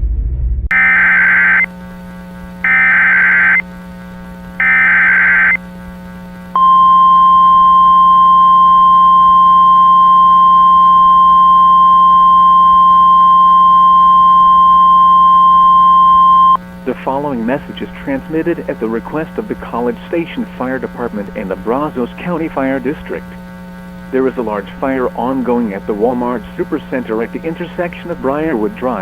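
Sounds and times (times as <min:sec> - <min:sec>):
data tone bursts: 0:00.7 - 0:01.7, 0:02.6 - 0:03.6, 0:04.6 - 0:05.6, 0:06.6 - 0:17.2
steady loud attention tone: 0:00.7 - 0:01.8, 0:02.6 - 0:03.6, 0:04.6 - 0:05.6, 0:06.5 - 0:23.4.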